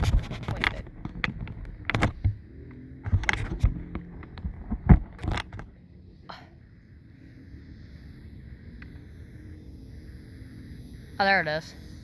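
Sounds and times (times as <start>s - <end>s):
camera handling clicks and knocks: 0.0s - 2.4s, 3.1s - 5.7s
faint electric motor hum: 0.0s - 12.0s.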